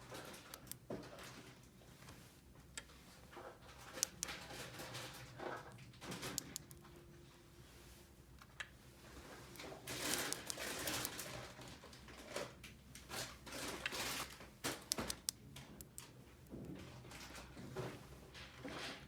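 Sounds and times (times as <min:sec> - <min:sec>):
sharp plastic clicks: 0:00.4 - 0:00.8, 0:03.9 - 0:04.5, 0:06.1 - 0:06.8, 0:09.9 - 0:11.3, 0:14.7 - 0:16.1.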